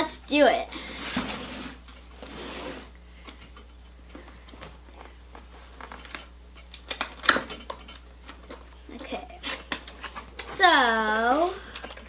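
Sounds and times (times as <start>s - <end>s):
packaging clicks and rustles: 9.4s - 12.0s.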